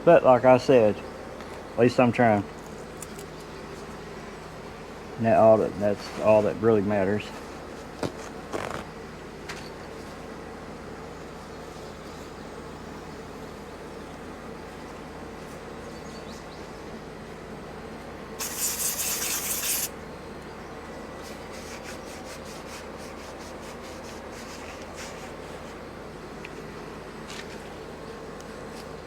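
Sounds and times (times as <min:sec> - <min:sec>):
steady background hum: 0:00.0 - 0:29.0
pressurised spray hissing: 0:18.4 - 0:19.9.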